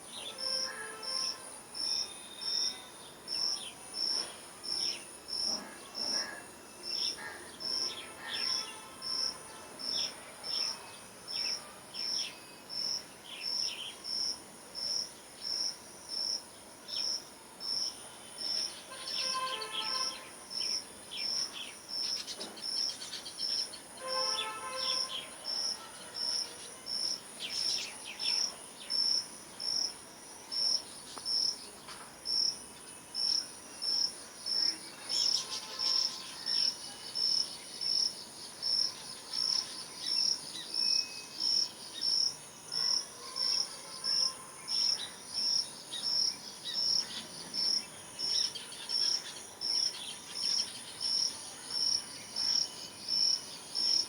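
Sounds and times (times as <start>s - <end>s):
insect chirping rhythmically: 44.8s - 54.0s.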